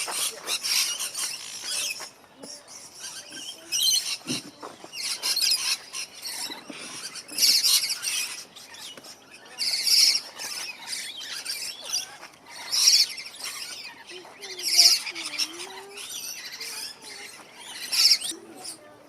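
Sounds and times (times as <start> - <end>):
birds chirping and twittering: 0.0 - 19.0.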